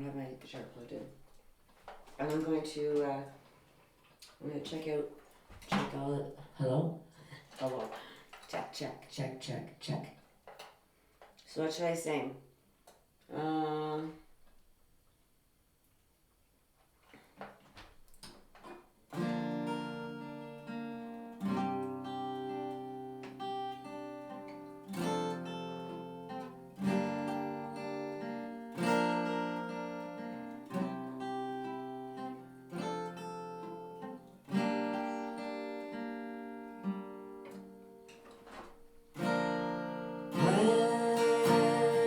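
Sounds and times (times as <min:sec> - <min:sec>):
acoustic guitar strummed chords: 0:19.1 - 0:42.0.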